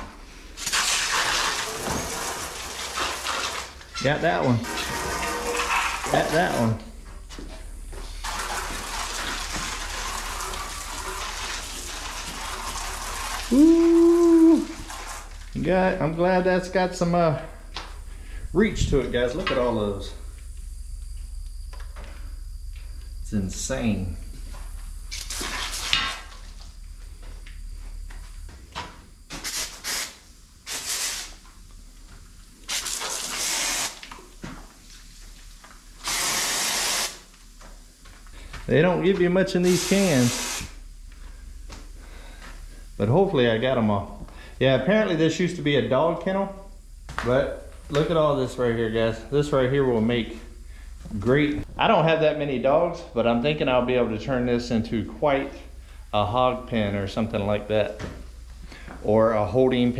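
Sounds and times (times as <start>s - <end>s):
aerosol spray can hissing: 29.4s - 31.4s, 36.0s - 37.2s, 39.7s - 40.8s.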